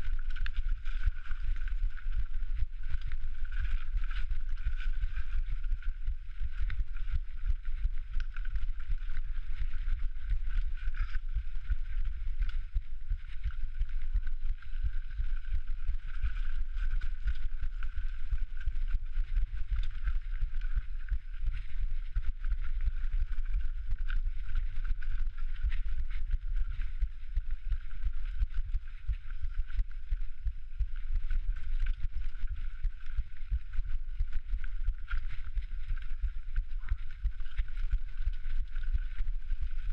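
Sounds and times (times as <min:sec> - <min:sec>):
heartbeat thumping: 0:25.6 - 0:39.9.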